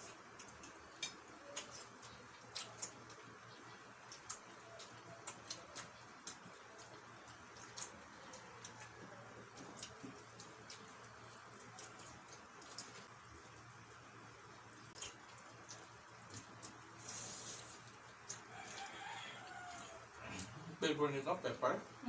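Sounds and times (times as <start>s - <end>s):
eating clicks and smacks: 0.0s - 13.1s, 14.7s - 16.9s, 17.7s - 18.9s.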